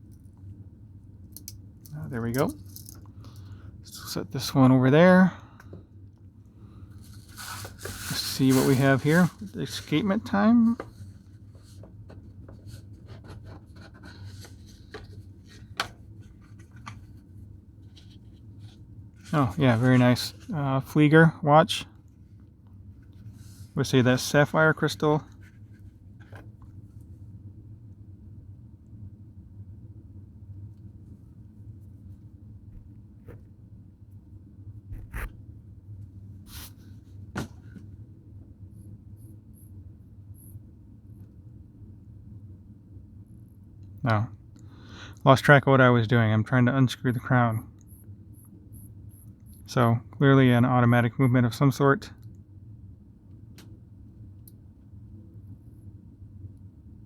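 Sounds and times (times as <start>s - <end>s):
faint low hum: 0.0s - 57.0s
hands rubbing and rustling: 7.0s - 17.2s.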